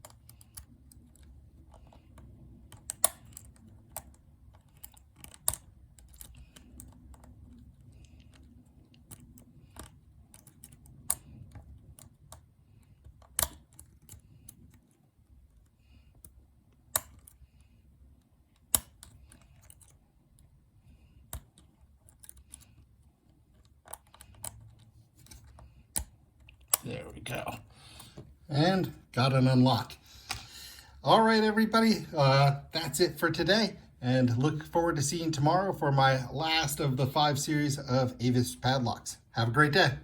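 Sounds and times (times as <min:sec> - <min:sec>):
lock pick metallic clicks: 0:00.0 - 0:14.9, 0:15.5 - 0:17.6, 0:18.5 - 0:20.5, 0:23.5 - 0:26.9.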